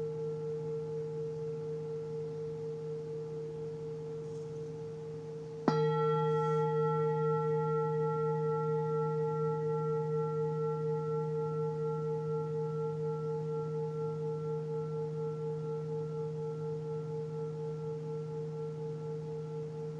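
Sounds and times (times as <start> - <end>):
singing bowl ringing: 0.0 - 19.9
singing bowl struck: 5.6 - 19.9.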